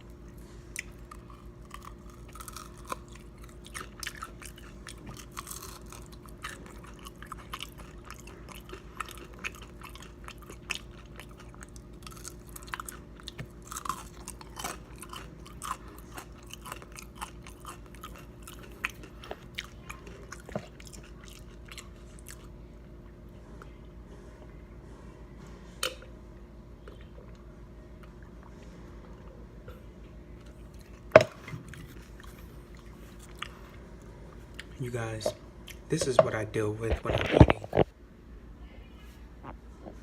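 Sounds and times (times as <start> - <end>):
crunchy chewing: 0.0 - 22.6, 30.4 - 36.0
steady low hum: 0.0 - 40.0.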